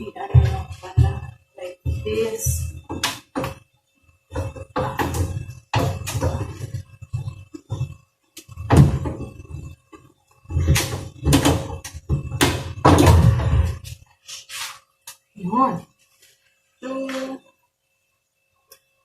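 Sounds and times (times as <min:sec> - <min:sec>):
plastic parts knocking and clattering: 0:04.3 - 0:13.9.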